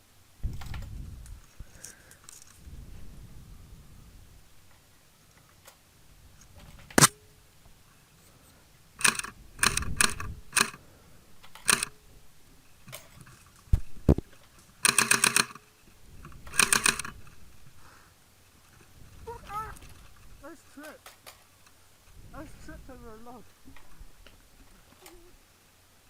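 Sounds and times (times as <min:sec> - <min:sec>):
airsoft gun firing: 0:06.9 - 0:07.2, 0:16.5 - 0:17.1.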